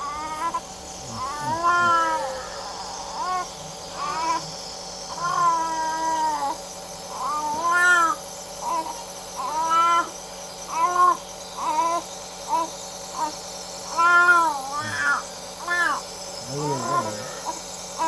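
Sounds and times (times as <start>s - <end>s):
baby crying: 0.0s - 16.0s, 16.6s - 17.6s
faint hum and hiss: 0.0s - 18.0s.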